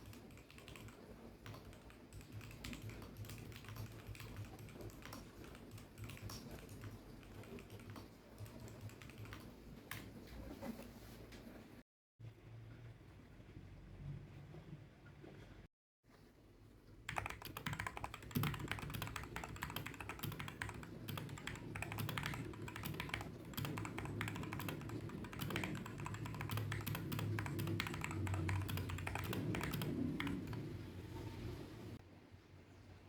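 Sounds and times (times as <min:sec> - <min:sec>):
mechanical keyboard typing: 0:00.0 - 0:10.0, 0:17.1 - 0:30.8.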